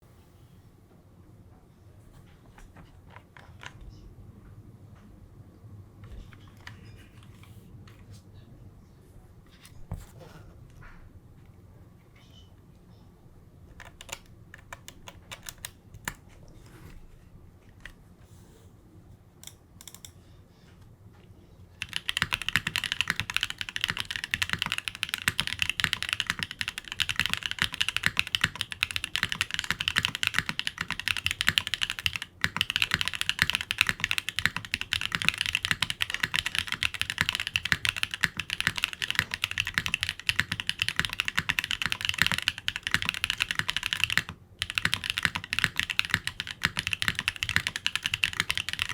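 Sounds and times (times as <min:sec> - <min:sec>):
mechanical keyboard typing: 0:13.7 - 0:16.2, 0:19.4 - 0:20.1, 0:21.8 - 0:48.9.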